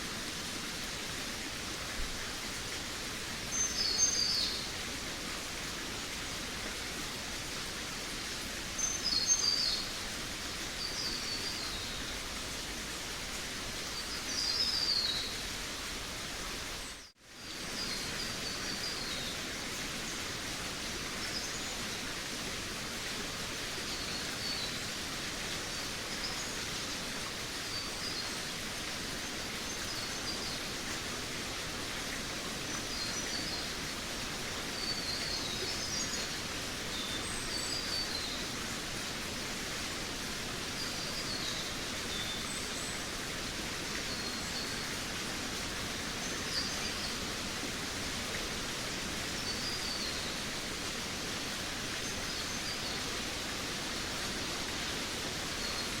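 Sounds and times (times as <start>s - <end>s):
steady forest hiss: 0.0s - 56.0s.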